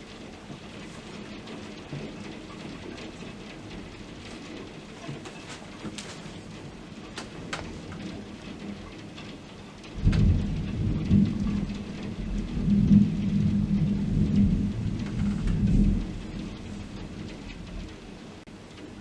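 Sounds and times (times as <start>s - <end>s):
thunder clap and rumble: 0.0s - 18.5s
heavy rain: 0.0s - 19.0s.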